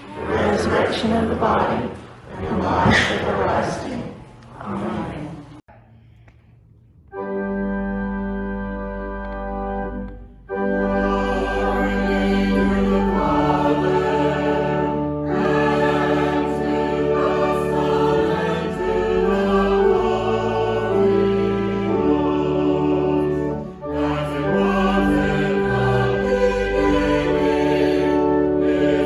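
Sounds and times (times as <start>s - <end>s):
choir singing a hymn: 9.9s - 29.0s.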